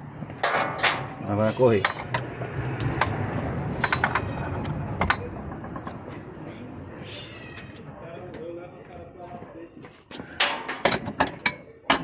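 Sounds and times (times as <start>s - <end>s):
light metallic clicks and knocks: 0.2s - 3.2s, 9.7s - 12.0s.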